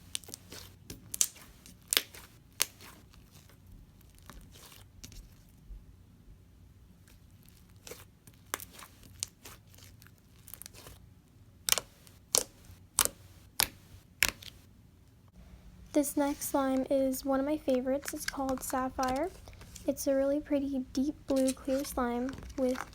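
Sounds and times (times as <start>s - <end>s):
slime crackling pops: 11.7s - 14.6s.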